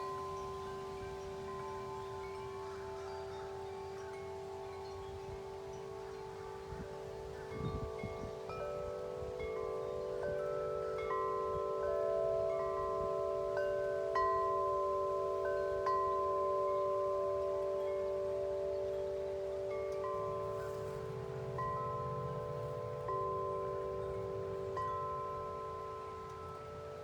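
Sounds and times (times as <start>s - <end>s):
wind chimes ringing: 0.0s - 27.0s
low wind rumble: 4.5s - 10.4s, 18.1s - 27.0s.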